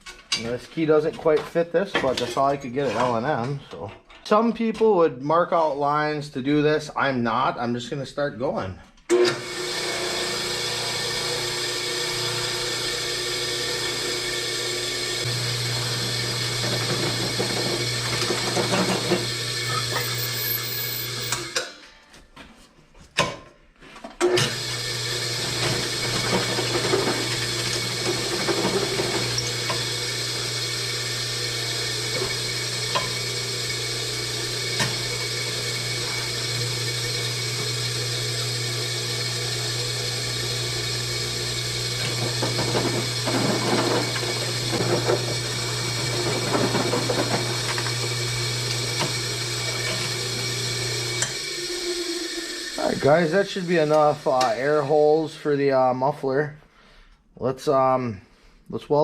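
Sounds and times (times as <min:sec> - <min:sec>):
drill press drilling metal: 0:09.1 - 0:21.7, 0:24.2 - 0:54.8.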